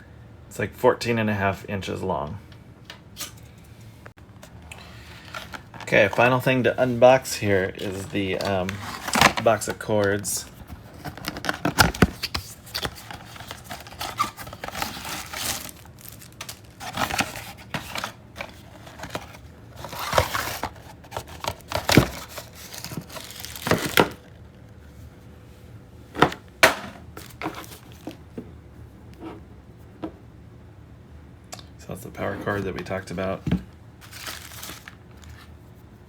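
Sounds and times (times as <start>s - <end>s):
packaging rustling and crinkling: 4.4s - 24.5s, 26.2s - 28.2s, 33.5s - 35.6s.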